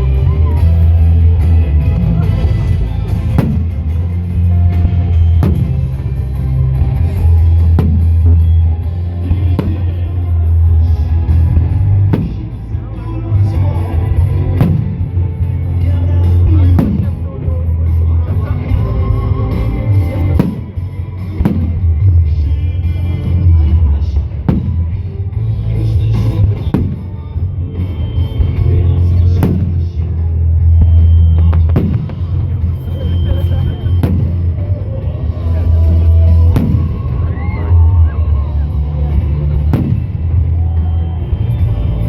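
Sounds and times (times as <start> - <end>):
loud rock music: 0.0 - 42.0
firework bangs: 2.9 - 10.2, 11.3 - 12.7, 14.6 - 15.2, 16.5 - 17.3, 20.4 - 21.8, 24.4 - 25.1, 26.4 - 30.1, 30.8 - 34.6, 36.2 - 37.3, 39.6 - 41.6.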